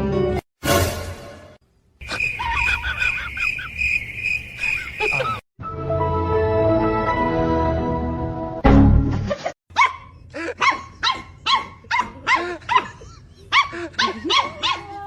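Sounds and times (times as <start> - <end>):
dog barking: 9.7 - 15.0.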